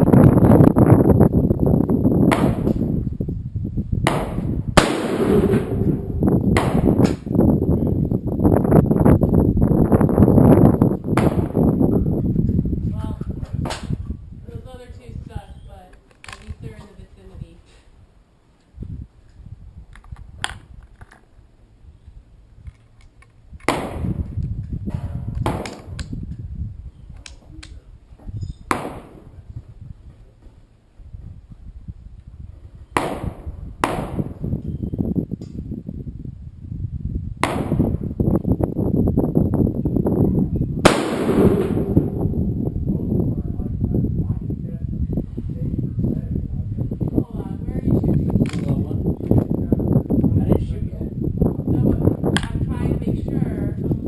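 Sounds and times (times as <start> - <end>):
wind buffeting microphone: 0.0 - 54.0
gunshots: 4.1 - 7.1, 40.9 - 42.4
faint gunshot crack: 40.9 - 42.2.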